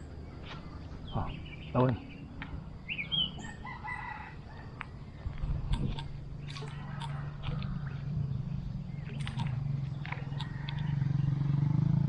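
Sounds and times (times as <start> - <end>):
bird calling: 0.0 - 4.9, 5.7 - 11.6
steady low drone: 5.0 - 12.0.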